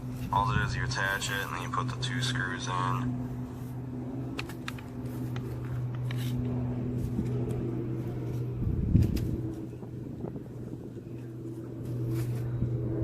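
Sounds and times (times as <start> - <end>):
steady low hum: 0.0 - 13.0
low rumble: 3.0 - 13.0.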